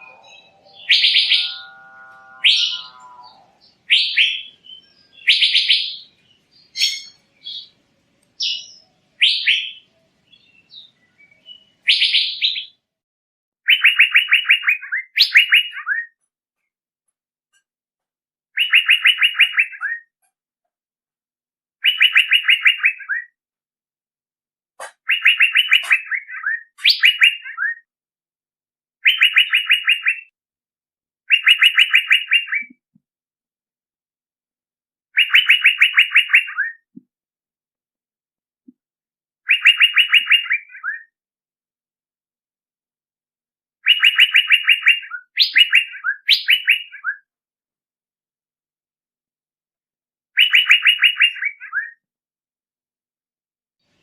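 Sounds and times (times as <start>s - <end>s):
bird calling liquid notes: 0.0s - 5.8s.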